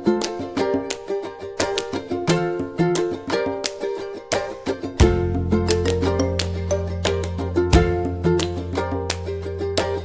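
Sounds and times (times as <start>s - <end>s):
upbeat plucked-string tune: 0.0s - 10.0s
steady bass note: 5.0s - 10.0s.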